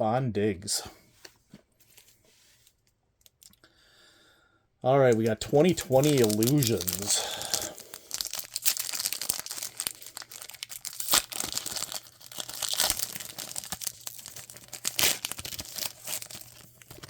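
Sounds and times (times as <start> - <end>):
wrapper tearing and crinkling: 5.6 - 17.0.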